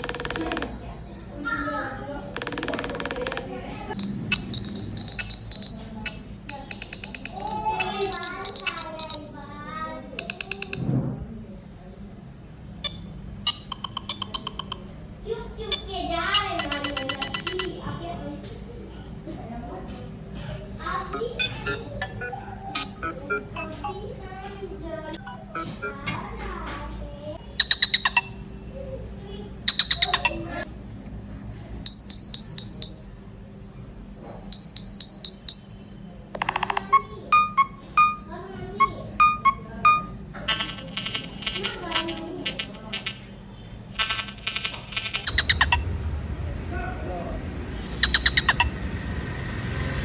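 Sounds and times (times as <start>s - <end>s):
electronic blip ringtone: 4.0s - 9.2s, 12.8s - 14.9s, 16.6s - 17.8s, 21.1s - 24.0s, 25.2s - 26.1s, 27.6s - 28.4s, 29.7s - 30.6s, 31.9s - 33.2s, 34.6s - 35.8s, 36.4s - 40.2s, 48.0s - 48.8s.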